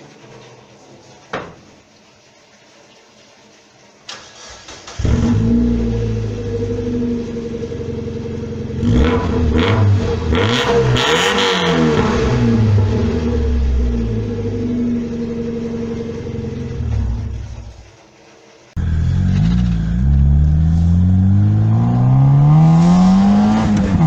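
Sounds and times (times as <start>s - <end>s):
engine cranking: 4.1s - 5.8s, 18.8s - 22.1s
car engine idling and revving: 4.9s - 17.8s, 18.8s - 24.0s.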